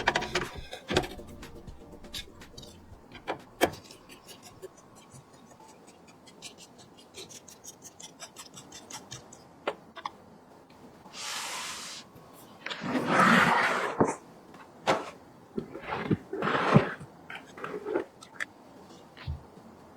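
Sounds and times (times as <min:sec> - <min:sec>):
rustling scrape: 0:11.2 - 0:14.2, 0:14.8 - 0:18.2.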